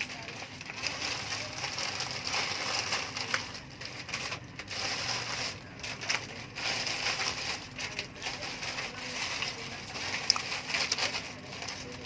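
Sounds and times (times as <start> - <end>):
chewing and crunching food: 0.0 - 12.0.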